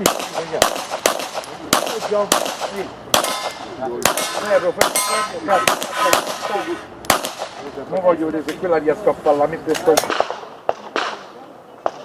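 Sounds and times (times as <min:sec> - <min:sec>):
handgun shots: 0:00.0 - 0:07.6
steel targets clanging: 0:03.2 - 0:06.8.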